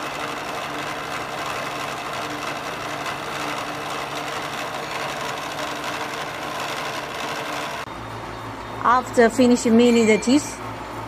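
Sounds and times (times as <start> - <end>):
milling machine cutting steel: 0.0 - 7.9.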